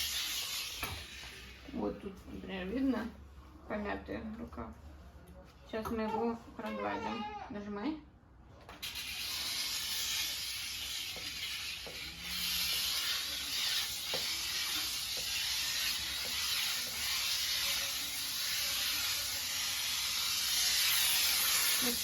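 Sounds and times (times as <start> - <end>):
steam hissing from steamer: 8.8 - 22.0.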